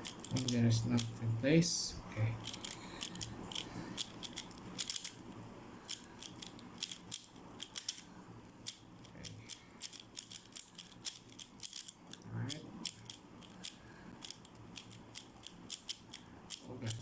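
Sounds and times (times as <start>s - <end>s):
speed cube clicking and rattling: 0.0s - 1.2s, 2.4s - 17.0s.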